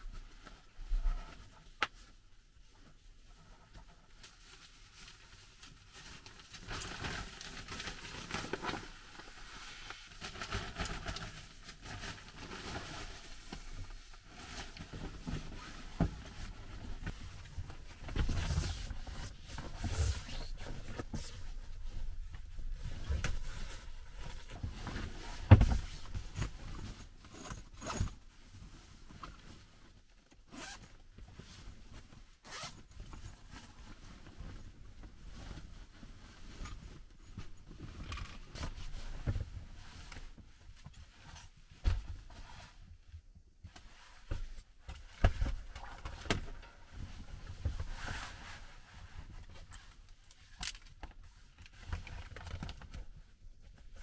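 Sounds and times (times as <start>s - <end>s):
rustling and scraping: 0.1s - 54.0s.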